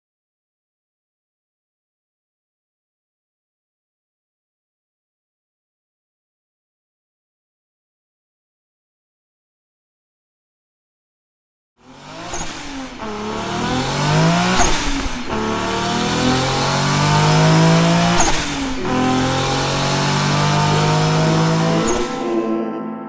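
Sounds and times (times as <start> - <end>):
car engine accelerating: 11.8 - 22.6.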